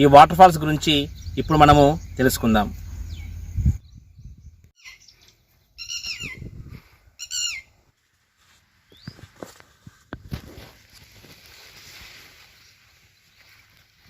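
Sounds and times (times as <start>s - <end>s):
bird chirps falling: 0.6s - 6.5s.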